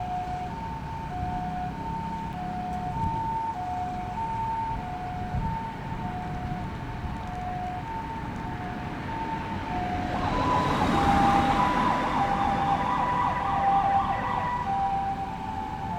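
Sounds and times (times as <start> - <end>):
two-tone ambulance siren: 0.0 - 15.9
road traffic rumble: 7.9 - 15.9.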